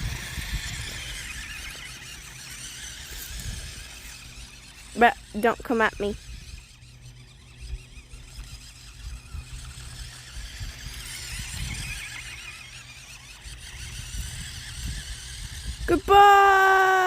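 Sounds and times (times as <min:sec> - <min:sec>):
toy truck electric motor whining: 0:00.0 - 0:17.0.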